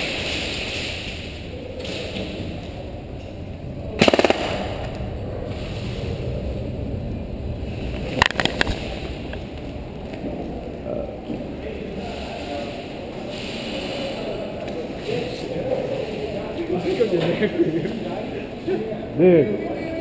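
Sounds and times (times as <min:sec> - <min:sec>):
low rumble: 0:00.0 - 0:11.9
airsoft gunfire: 0:04.0 - 0:05.0.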